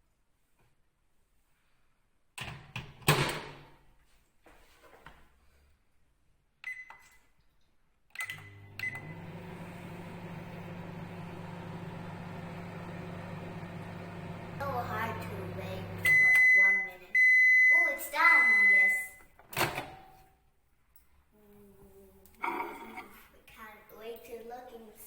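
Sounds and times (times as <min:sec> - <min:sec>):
microwave oven humming: 0:08.3 - 0:17.7
keypad beeps: 0:16.0 - 0:17.8, 0:18.4 - 0:19.2.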